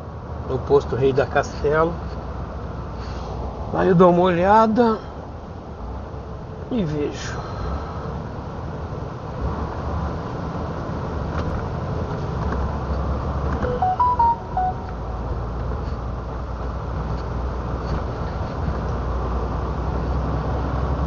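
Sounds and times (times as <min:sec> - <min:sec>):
truck engine rumble from cab: 0:00.0 - 0:21.0
short electronic melody: 0:13.6 - 0:15.3.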